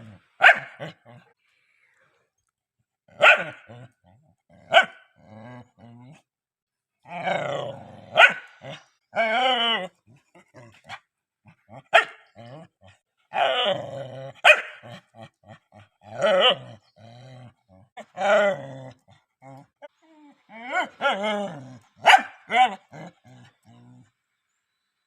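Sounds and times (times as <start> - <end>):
dog barking: 0.4 - 1.0, 3.2 - 3.8, 4.7 - 5.0, 8.1 - 8.8, 11.8 - 12.3, 14.4 - 14.8, 22.0 - 22.8.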